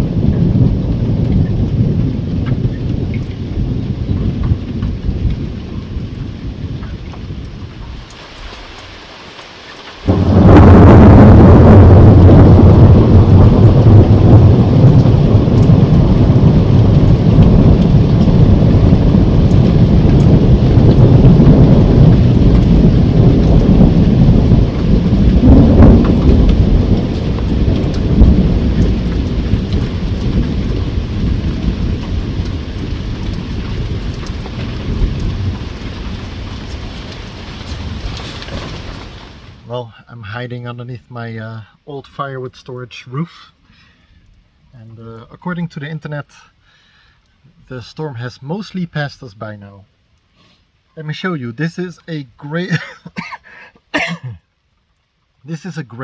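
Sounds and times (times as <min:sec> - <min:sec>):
thunder clap and rumble: 0:00.0 - 0:08.1, 0:10.0 - 0:39.6
steady rain: 0:00.0 - 0:56.0.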